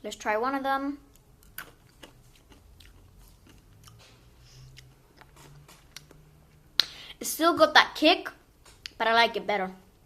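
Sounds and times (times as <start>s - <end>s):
candy crunching while chewed: 1.0s - 6.2s.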